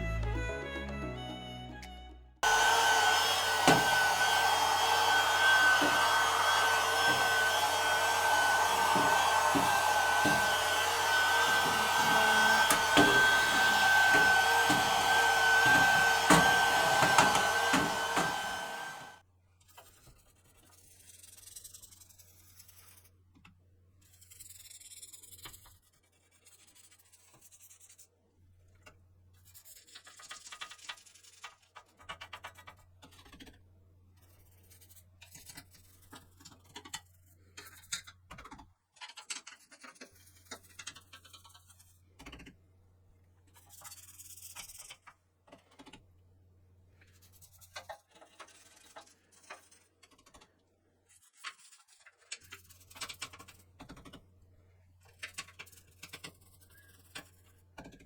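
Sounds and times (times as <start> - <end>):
small electric motor whining: 2.4 - 19.2.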